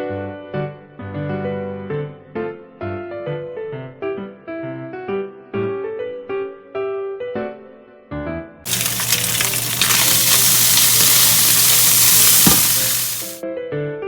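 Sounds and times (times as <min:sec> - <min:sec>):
food sizzling in a frying pan: 0:08.7 - 0:13.4.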